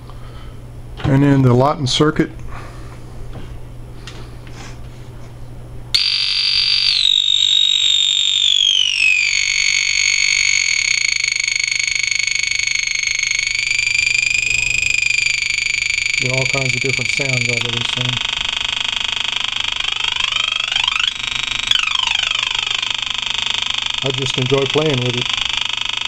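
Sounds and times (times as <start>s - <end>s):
low steady hum: 0.0s - 25.8s
shrill buzzy electronic tone: 6.0s - 26.0s.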